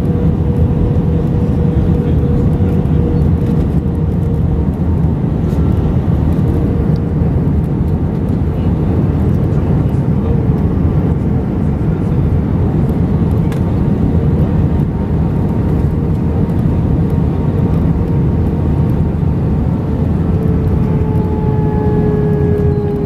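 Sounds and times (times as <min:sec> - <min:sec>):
engine and airflow roar: 0:00.0 - 0:23.0
faint hum: 0:18.9 - 0:23.0.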